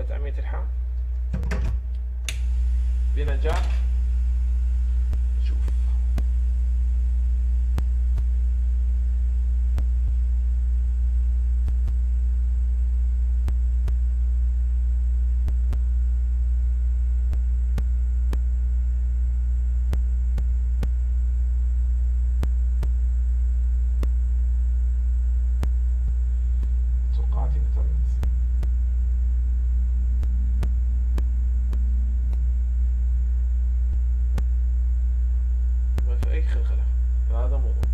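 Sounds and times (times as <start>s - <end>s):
low electrical hum: 0.0s - 37.9s
faint irregular clicks: 9.7s - 10.2s, 11.6s - 12.0s, 15.4s - 15.9s, 19.8s - 21.1s, 22.4s - 23.1s, 23.8s - 24.3s, 25.5s - 27.0s, 29.8s - 32.6s.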